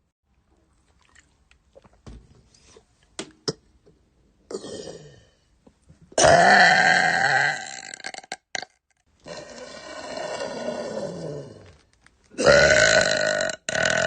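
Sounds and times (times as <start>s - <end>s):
woman burping: 4.5s - 5.2s, 6.2s - 8.7s, 12.4s - 14.0s.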